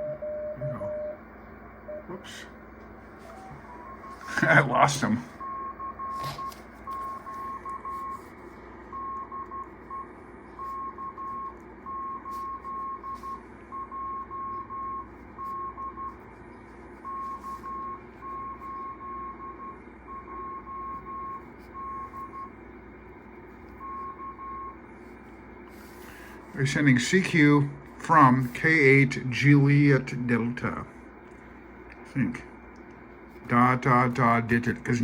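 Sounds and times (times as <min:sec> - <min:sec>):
morse code tone: 0:00.0 - 0:01.2, 0:01.9 - 0:02.2, 0:03.2 - 0:08.3, 0:08.9 - 0:16.2, 0:17.0 - 0:22.6, 0:23.7 - 0:24.8.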